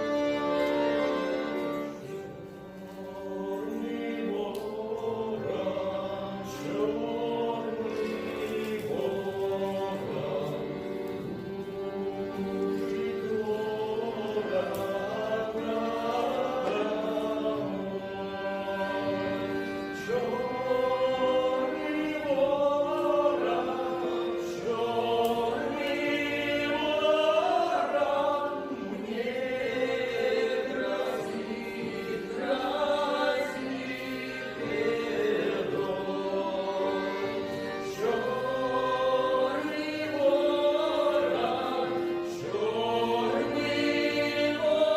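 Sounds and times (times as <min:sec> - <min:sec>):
vocal ensemble singing folk song: 0:00.0 - 0:44.9.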